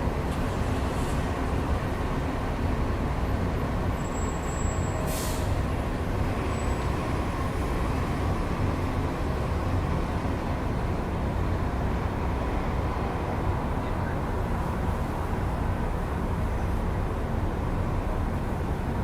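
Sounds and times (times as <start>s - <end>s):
city street traffic rumble: 0.0s - 19.0s
short hiss: 5.1s - 5.5s.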